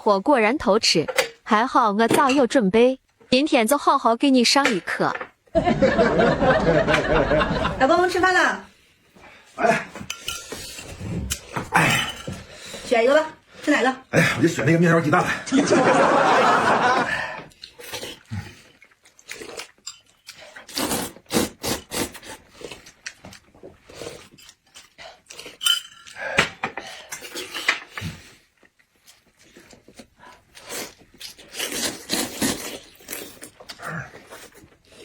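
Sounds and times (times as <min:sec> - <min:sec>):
utensils clinking against dishes: 0:10.0 - 0:12.5, 0:25.5 - 0:26.2
noodles slurped and chewed: 0:17.5 - 0:25.6, 0:26.9 - 0:35.0.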